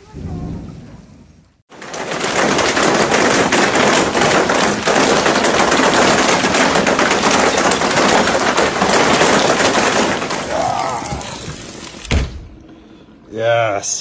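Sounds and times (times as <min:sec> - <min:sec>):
heavy hail on hard surfaces: 0:01.7 - 0:12.0.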